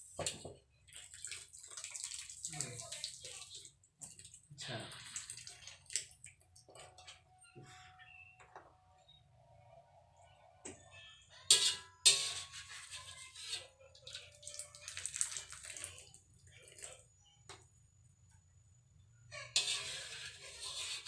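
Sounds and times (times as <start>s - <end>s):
hot water splashing and pouring: 0.0s - 6.9s, 11.5s - 17.0s, 19.6s - 21.0s.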